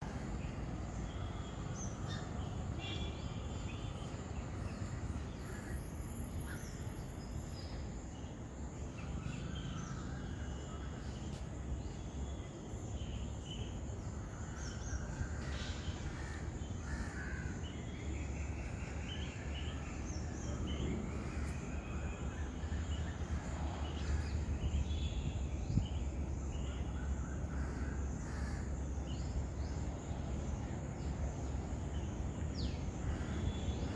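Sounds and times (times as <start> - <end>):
crow-like calls: 16.0 - 17.6, 27.5 - 28.7.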